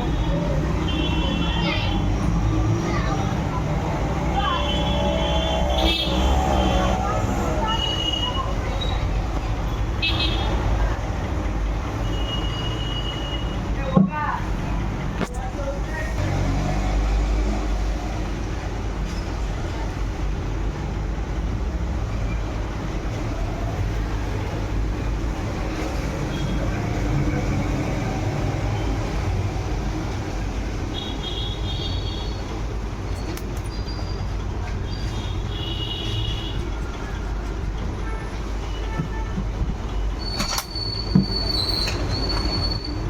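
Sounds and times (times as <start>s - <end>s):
high-pitched squeals: 40.2s - 43.0s.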